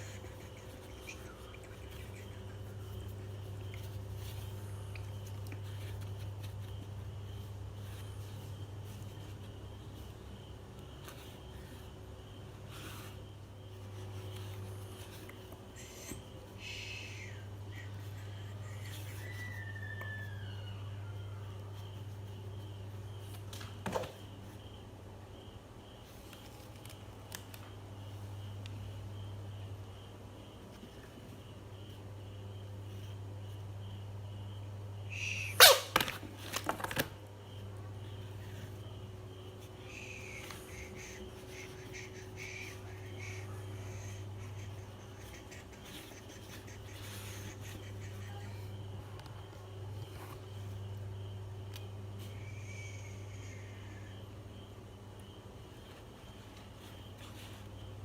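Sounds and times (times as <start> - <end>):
faint high chirping: 0.0 - 23.4, 37.5 - 58.0
steady low hum: 0.0 - 58.0.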